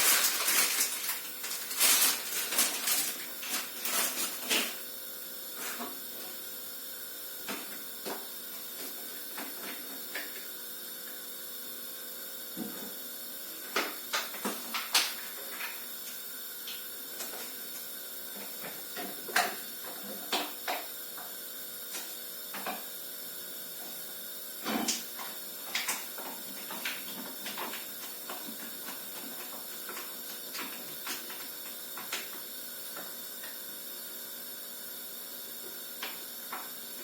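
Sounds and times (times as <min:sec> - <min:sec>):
kitchen things clicking and knocking: 0:13.6 - 0:15.8, 0:18.4 - 0:20.9, 0:24.6 - 0:32.4.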